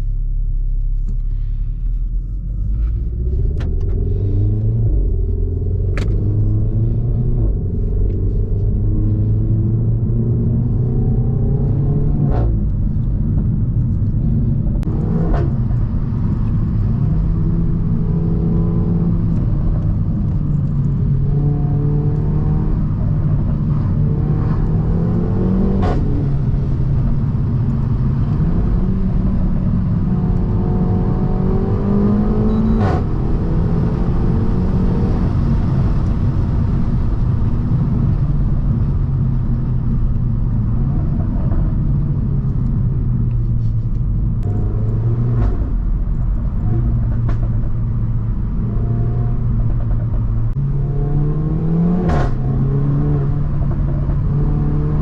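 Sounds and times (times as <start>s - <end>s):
car engine accelerating: 0.0s - 55.0s
road rumble: 0.0s - 55.0s
exhaust crack at gear shifts: 35.3s - 50.8s, 51.9s - 55.0s.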